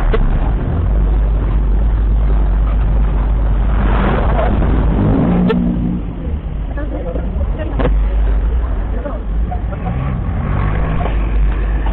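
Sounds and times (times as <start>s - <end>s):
vehicle engine rumble: 0.0s - 11.9s
wind rushing: 3.3s - 6.7s.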